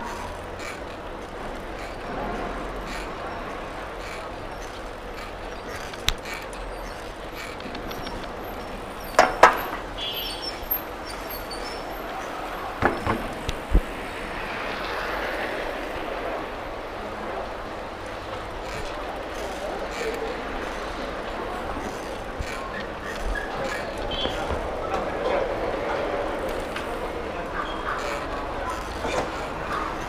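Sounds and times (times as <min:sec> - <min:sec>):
sharp clacks: 0:00.0 - 0:13.9
traffic and air rushing: 0:00.0 - 0:30.0.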